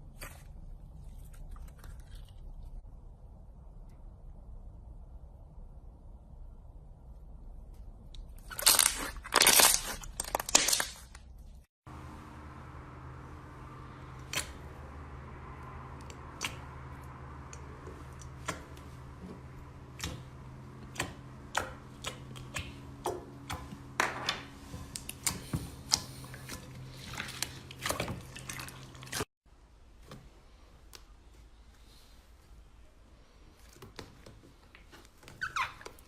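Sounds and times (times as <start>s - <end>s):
steady low hum: 11.9s - 29.3s.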